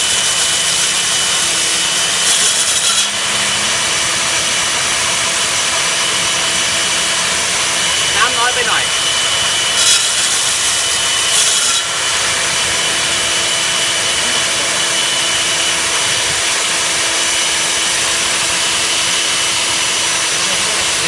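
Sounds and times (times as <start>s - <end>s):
core drill boring: 0.0s - 21.0s.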